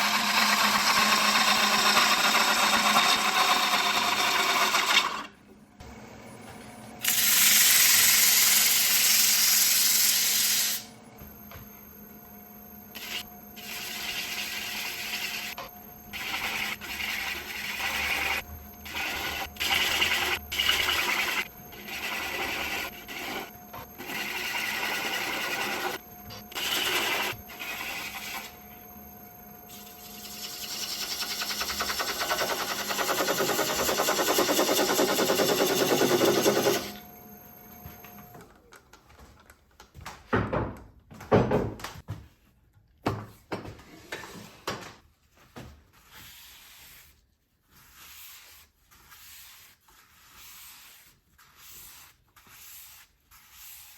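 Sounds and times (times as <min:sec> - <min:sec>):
turning tool cutting wood: 0:00.0 - 0:05.3, 0:07.0 - 0:11.8, 0:12.8 - 0:38.3
wood lathe humming: 0:00.0 - 0:05.3, 0:07.0 - 0:38.3.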